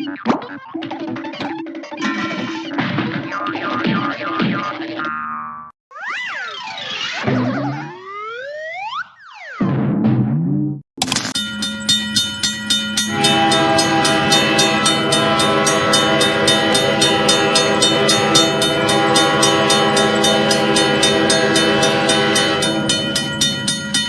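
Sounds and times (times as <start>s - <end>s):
train horn chord: 13.0s - 24.0s.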